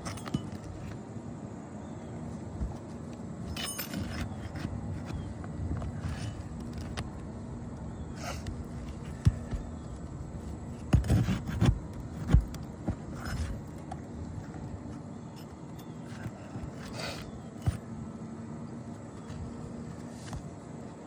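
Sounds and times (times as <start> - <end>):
tool knocks and thumps: 10.9 - 13.6.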